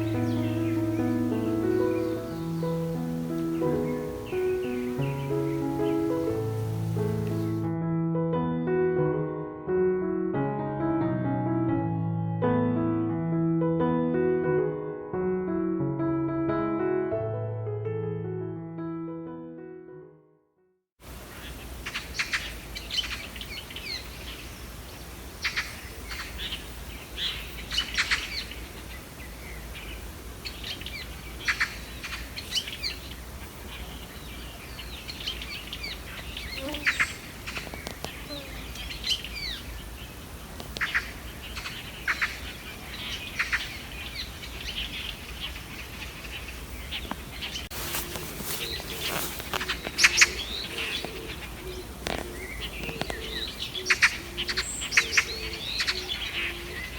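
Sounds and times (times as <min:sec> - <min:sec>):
songbirds chirping: 0:00.0 - 0:07.7, 0:21.0 - 0:56.9
outdoor background noise: 0:00.0 - 0:07.8, 0:21.0 - 0:56.9.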